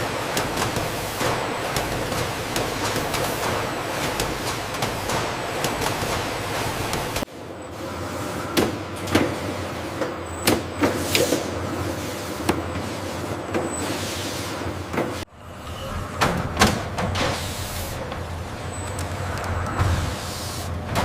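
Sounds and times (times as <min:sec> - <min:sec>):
sharp clicks and knocks: 0:00.3 - 0:07.3.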